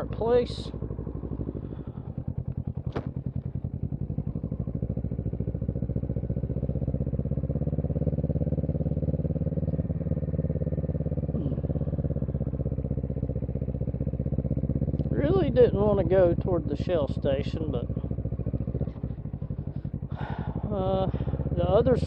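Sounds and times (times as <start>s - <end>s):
motorcycle engine running: 0.0s - 22.0s.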